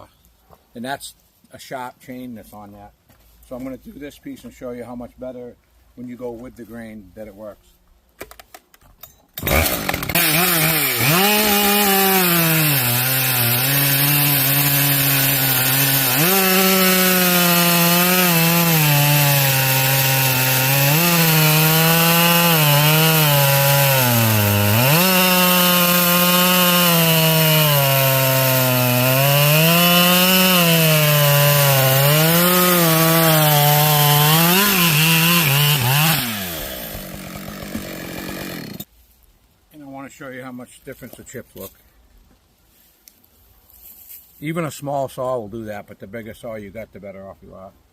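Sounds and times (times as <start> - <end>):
chainsaw cutting log: 9.4 - 38.9.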